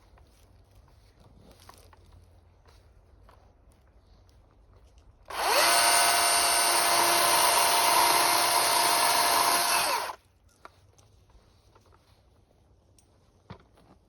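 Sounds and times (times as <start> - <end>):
cordless power tool motor spinning: 5.3 - 10.2.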